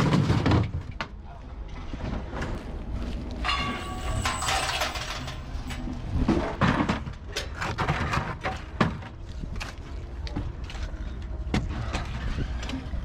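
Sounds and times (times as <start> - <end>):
scrap metal clanking and scraping: 1.8 - 9.8
short metallic squeal: 3.5 - 5.4.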